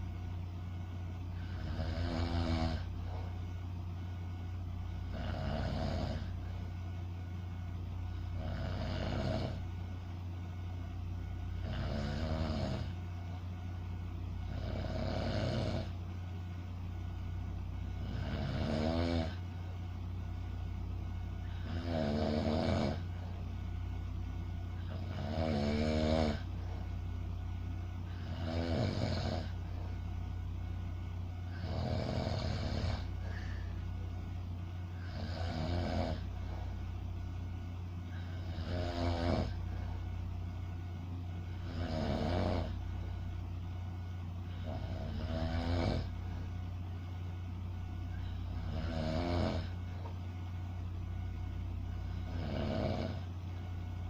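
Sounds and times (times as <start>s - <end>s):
steady low hum: 0.0s - 54.0s.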